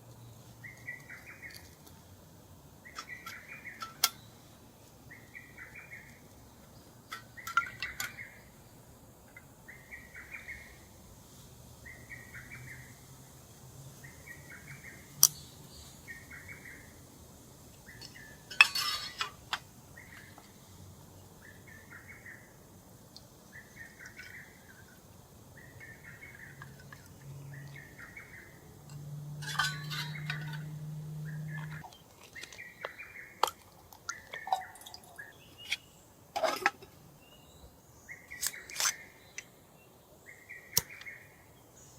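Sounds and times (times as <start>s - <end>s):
metal cookware clinking: 3.0s - 4.2s, 7.1s - 8.3s, 18.0s - 19.6s, 28.8s - 31.9s, 36.4s - 37.0s
bird calling: 7.1s - 8.5s, 29.4s - 33.4s, 34.1s - 36.6s.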